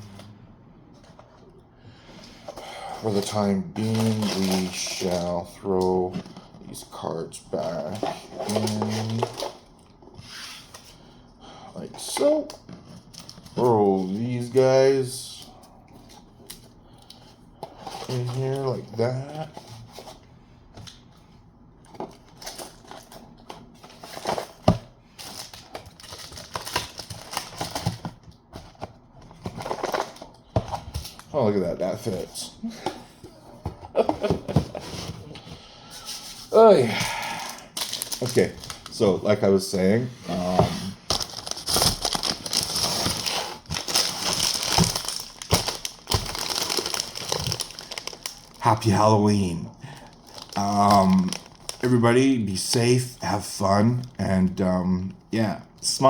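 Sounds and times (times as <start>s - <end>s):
packaging crinkling: 3.1s - 5.6s, 7.8s - 9.9s, 21.9s - 28.8s, 37.2s - 39.4s, 40.4s - 52.0s
cards and cardboard box handled: 21.9s - 31.2s.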